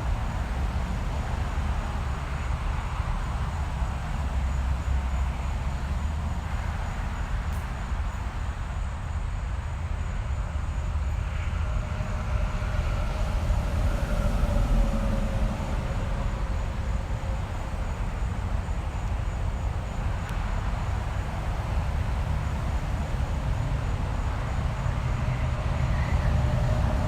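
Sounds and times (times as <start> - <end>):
traffic rumble: 0.0 - 27.0
vehicle passing with whine: 10.9 - 19.2.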